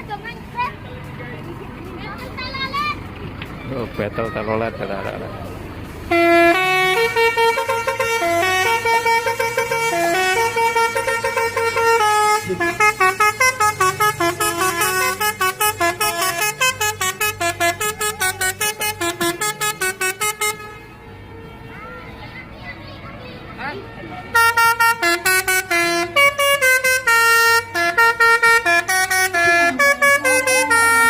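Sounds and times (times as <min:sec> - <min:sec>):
truck multi-tone horn tune: 0:06.0 - 0:22.0, 0:24.2 - 0:31.0.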